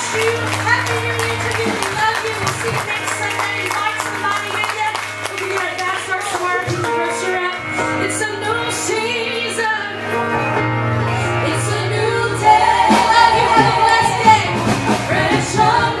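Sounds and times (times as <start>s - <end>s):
band playing: 0.0s - 16.0s
people singing worship music: 10.9s - 16.0s.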